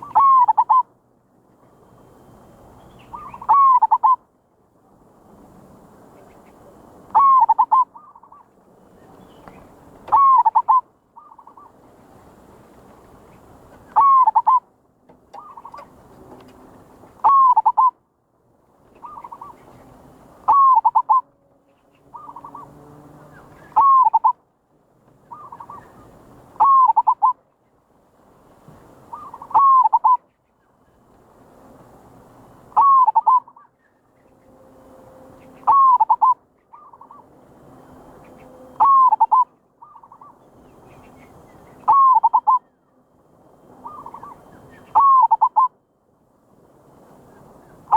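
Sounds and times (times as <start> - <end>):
dove cooing: 0.0 - 0.9, 3.1 - 4.2, 7.1 - 8.5, 10.0 - 11.8, 13.4 - 14.7, 15.3 - 16.0, 17.2 - 18.0, 19.0 - 19.6, 20.4 - 21.3, 22.0 - 24.4, 25.2 - 27.4, 29.1 - 30.2, 32.8 - 33.6, 35.4 - 37.2, 38.2 - 40.4, 41.7 - 42.7, 43.8 - 45.8.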